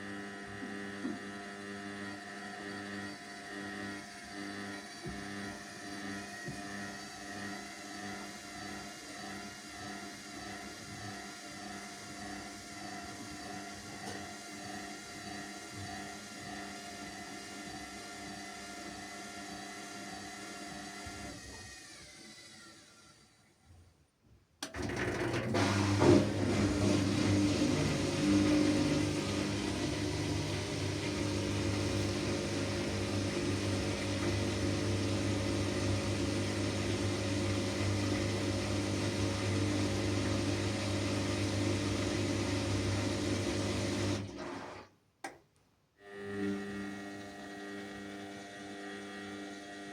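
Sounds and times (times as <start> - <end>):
washing machine spinning: 24.6 - 44.8, 46.7 - 49.9.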